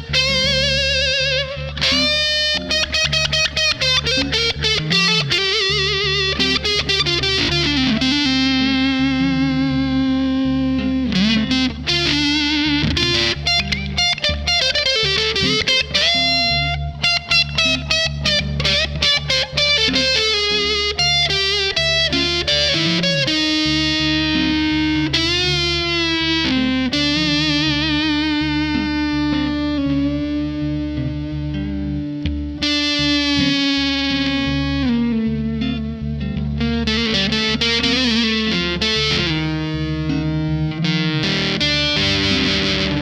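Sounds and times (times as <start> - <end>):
distorted electric guitar lead: 0.0 - 43.0.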